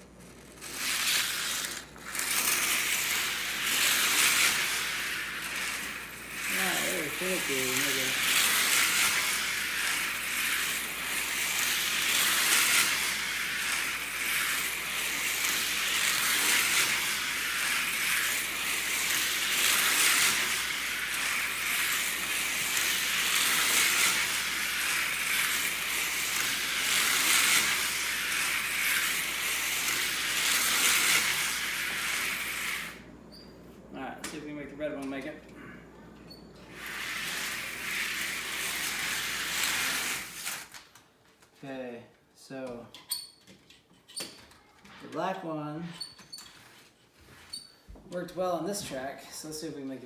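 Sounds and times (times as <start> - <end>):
toy train motor buzzing on track: 0.0 - 33.1, 36.6 - 40.8.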